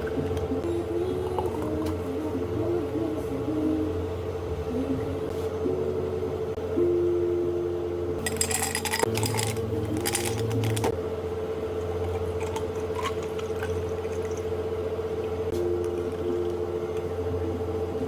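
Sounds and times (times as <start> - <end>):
cafe drink-making sounds: 0.0 - 4.2, 8.2 - 11.0, 11.7 - 18.0
steady machine hum: 0.0 - 18.0
glass and liquid handling: 8.2 - 10.9.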